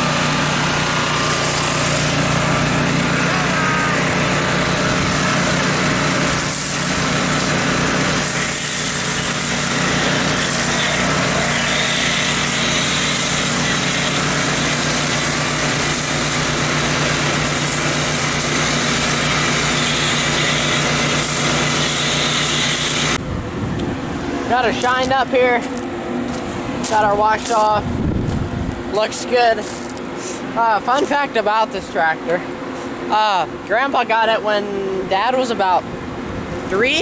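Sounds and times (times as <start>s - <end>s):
water spray hissing: 0.0s - 23.2s
pressure washer engine running: 0.0s - 37.0s.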